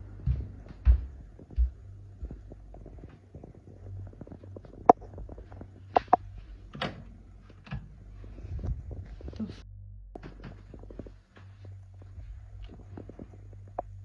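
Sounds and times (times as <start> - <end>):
dull low thuds: 0.0 - 14.0.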